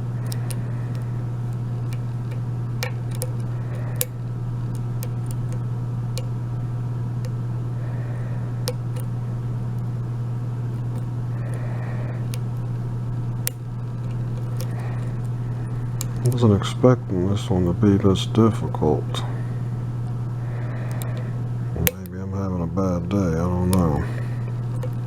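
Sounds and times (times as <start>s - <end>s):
steady low hum: 0.0s - 25.0s
faint lock pick scrapes: 0.1s - 6.4s, 10.6s - 12.7s, 13.4s - 16.4s, 20.6s - 21.4s
lock pick clicking: 0.2s - 6.4s, 7.2s - 7.4s, 8.6s - 9.1s, 10.8s - 12.5s, 13.4s - 16.4s, 21.8s - 22.1s.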